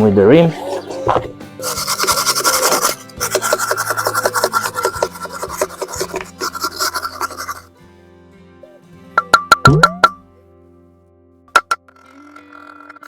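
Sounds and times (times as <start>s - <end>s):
background music: 0.0s - 13.0s
scrubbing rust off metal: 0.5s - 7.7s, 11.6s - 13.0s.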